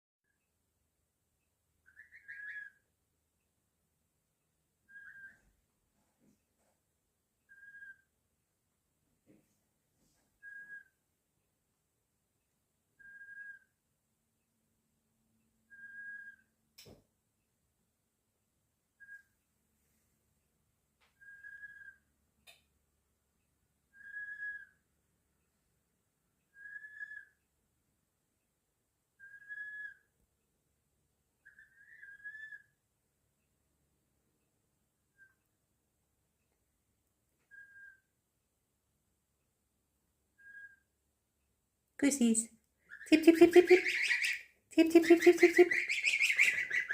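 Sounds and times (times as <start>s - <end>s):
goslings peeping: 42.9s - 46.9s.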